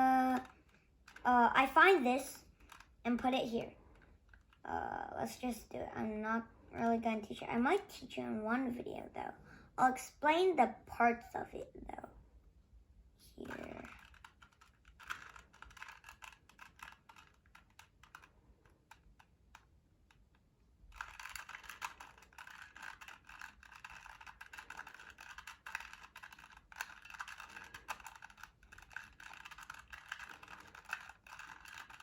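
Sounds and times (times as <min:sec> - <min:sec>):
puzzle cube clicking: 0:02.5 - 0:03.0, 0:13.5 - 0:32.0.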